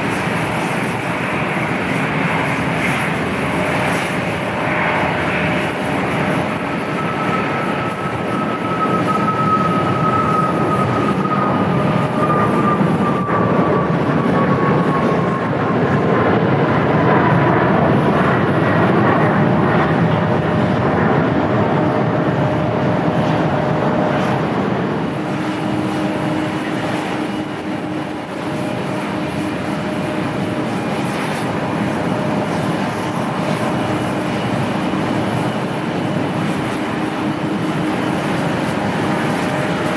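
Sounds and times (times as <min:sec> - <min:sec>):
jet engines roaring at takeoff: 0:00.0 - 0:39.9
jet engines running with low whine: 0:00.0 - 0:39.9.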